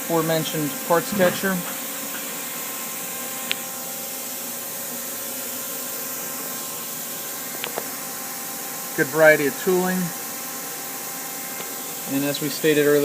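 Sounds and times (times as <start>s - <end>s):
workshop machinery hum: 0.0s - 13.0s.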